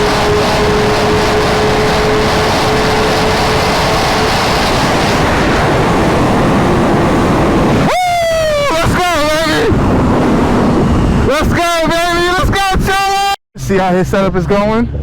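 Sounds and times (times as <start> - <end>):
loud high-pitched tone: 0.0 - 11.5
motorcycle engine: 0.0 - 12.1
wind rushing: 0.0 - 13.4.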